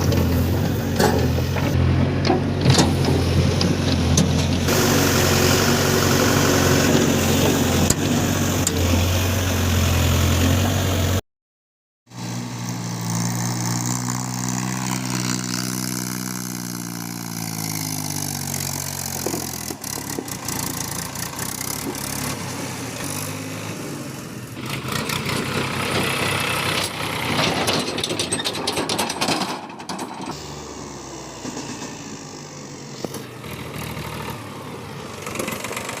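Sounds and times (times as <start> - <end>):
diesel engine humming: 0.0 - 11.2, 12.2 - 28.4, 30.2 - 36.0
rough machine noise: 0.0 - 11.2, 12.1 - 36.0.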